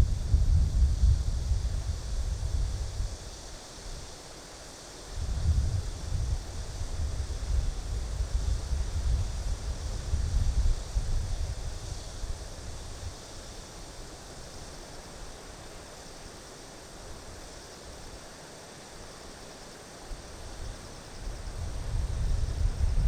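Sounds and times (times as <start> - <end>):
wind buffeting microphone: 0.0 - 3.1, 21.3 - 23.0
insects chirring in grass: 0.0 - 23.0.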